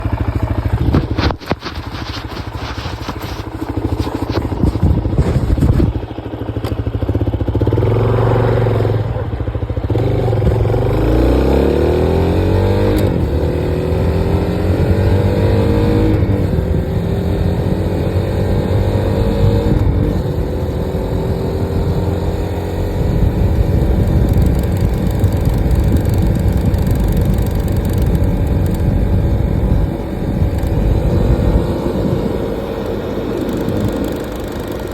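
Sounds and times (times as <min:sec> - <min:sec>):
engine ticking: 0:00.0 - 0:08.1, 0:19.7 - 0:34.9
motorcycle engine accelerating: 0:00.0 - 0:34.9.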